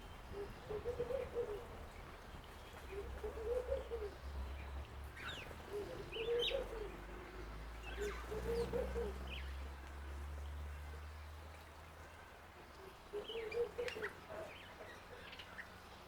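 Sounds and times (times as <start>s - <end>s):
songbirds chirping: 0.0s - 16.0s
dove cooing: 0.3s - 2.0s, 2.8s - 4.6s, 5.2s - 9.5s, 13.1s - 15.0s.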